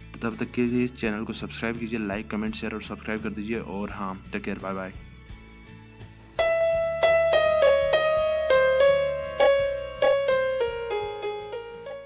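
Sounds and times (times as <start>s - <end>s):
piano melody: 6.3s - 12.0s.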